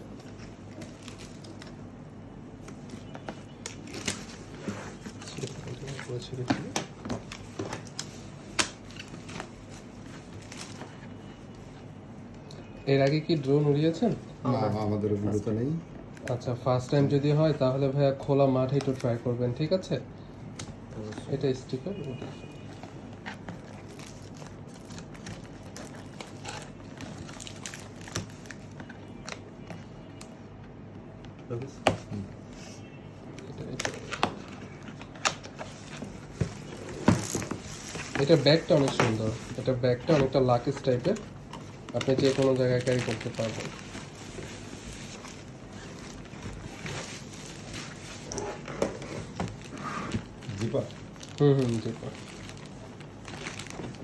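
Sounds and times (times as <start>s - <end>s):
packaging clicks and rustles: 0.1s - 1.9s, 2.5s - 11.2s, 18.5s - 19.3s, 20.5s - 30.4s, 33.4s - 54.0s.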